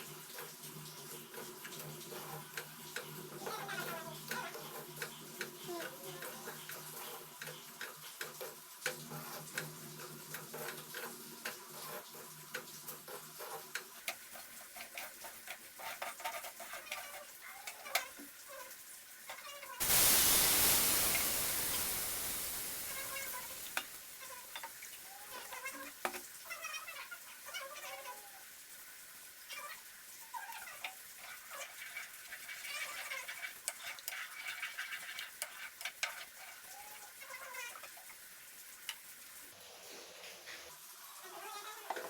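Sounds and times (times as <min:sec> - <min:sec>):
water sizzling in hot pan: 0:00.0 - 0:42.0
spatula scraping a pan: 0:00.2 - 0:18.2, 0:30.7 - 0:38.0.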